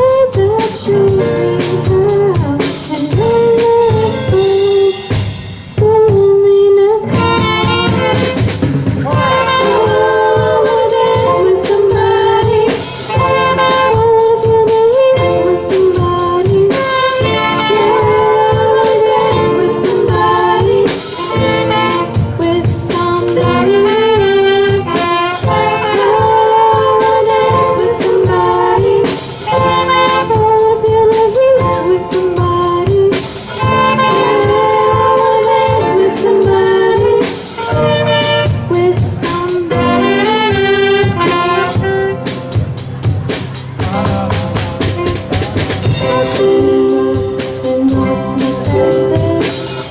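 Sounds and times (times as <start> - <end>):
live band playing: 0.0 - 49.9
steady drum beat: 0.0 - 49.9
lead vocal singing: 9.0 - 41.8, 45.6 - 49.9.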